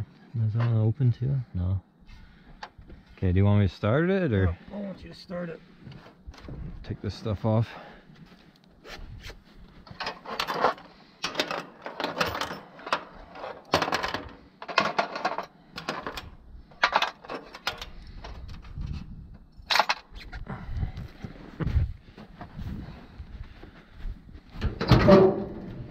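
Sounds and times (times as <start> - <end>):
metal tools clinking and rattling: 9.9 - 18.8, 19.6 - 20.1.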